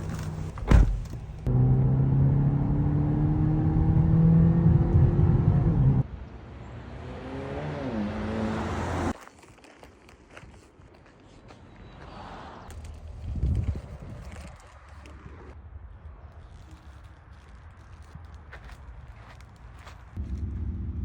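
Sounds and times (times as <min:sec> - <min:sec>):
car engine accelerating: 0:01.4 - 0:06.1, 0:06.7 - 0:09.2, 0:20.2 - 0:21.0.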